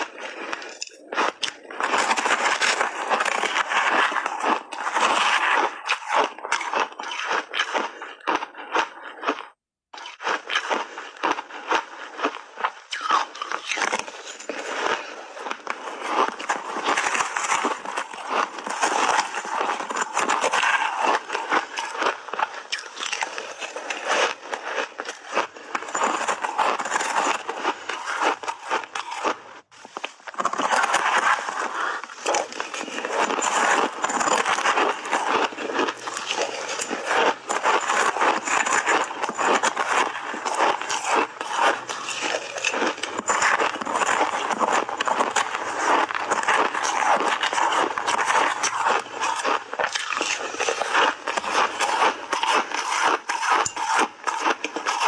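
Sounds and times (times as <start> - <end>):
crunching and chewing ice: 0.0 - 55.0.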